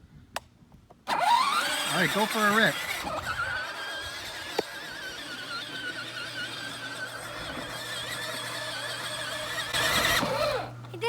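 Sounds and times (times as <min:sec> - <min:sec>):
toy truck motor whine: 0:01.1 - 0:10.8
steady low hum: 0:02.4 - 0:11.0
click: 0:04.5 - 0:04.7.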